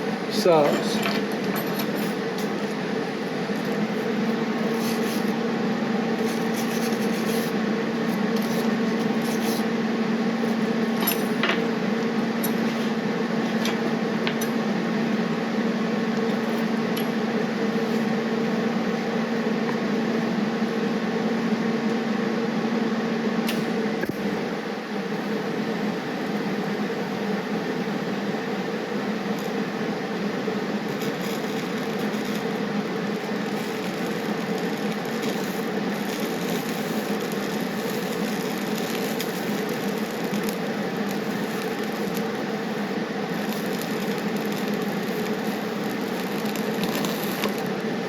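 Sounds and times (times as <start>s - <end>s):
torch flame hissing: 0.0s - 21.7s, 23.5s - 48.0s.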